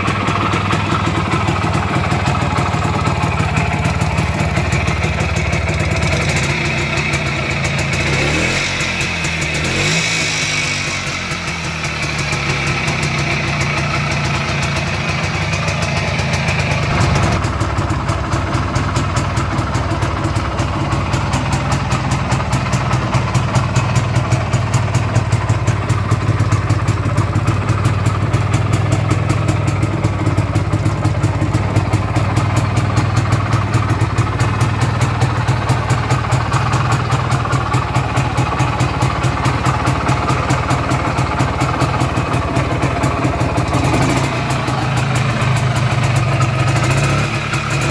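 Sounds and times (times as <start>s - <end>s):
two-stroke motorcycle engine idling: 0.0s - 47.9s.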